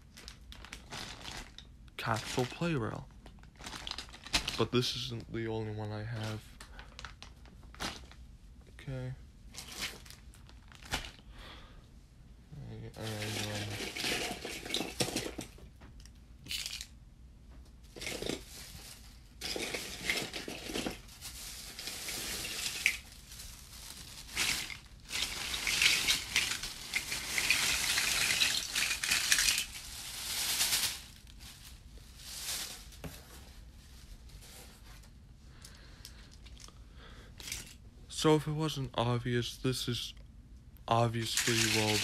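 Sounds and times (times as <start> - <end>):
packaging rustling and crinkling: 0.0 - 5.0, 6.2 - 8.2, 9.5 - 11.2, 13.0 - 15.7, 17.8 - 35.1, 41.2 - 42.0
plastic toys clicking and clattering: 13.1 - 16.9, 19.4 - 21.0, 24.3 - 29.8, 37.4 - 37.8, 41.2 - 42.0.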